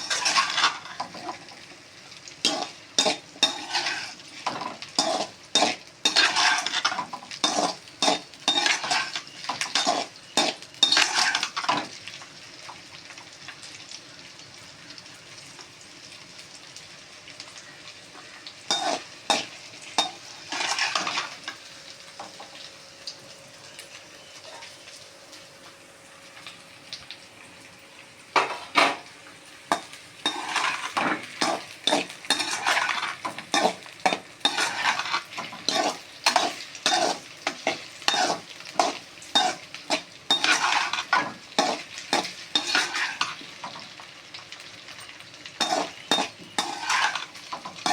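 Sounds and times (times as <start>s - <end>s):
metal spatula scraping a pan: 0.0s - 1.5s, 2.4s - 11.9s, 18.7s - 21.5s, 29.7s - 43.8s, 45.1s - 47.9s
low frying sizzle: 0.0s - 47.9s.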